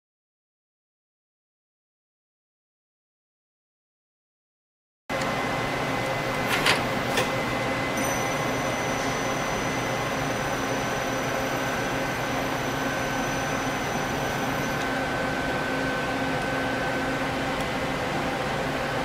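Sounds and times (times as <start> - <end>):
lathe machine hum and whine: 5.1 - 19.0.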